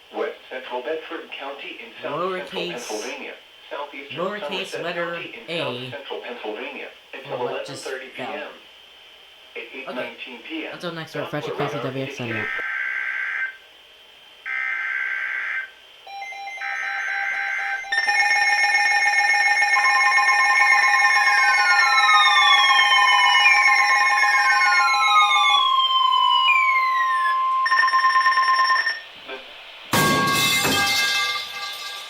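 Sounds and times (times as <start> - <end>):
layered alarm with falling sweeps: 14.5 - 29.1
long steady attention tone: 16.1 - 29.1.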